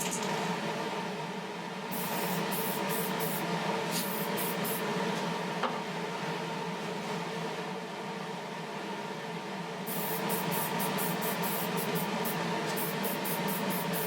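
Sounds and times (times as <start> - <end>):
steady hum: 0.0 - 14.0
spray can hissing bursts: 1.9 - 4.8, 9.9 - 14.0.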